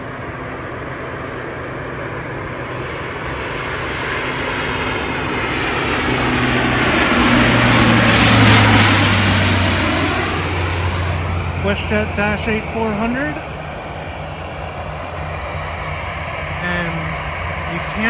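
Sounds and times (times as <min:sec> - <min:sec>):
turboprop airliner passing: 0:00.0 - 0:18.0.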